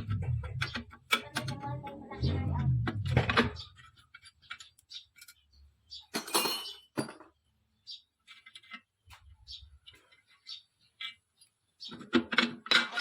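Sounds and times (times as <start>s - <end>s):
metal tools clinking: 6.1s - 7.2s.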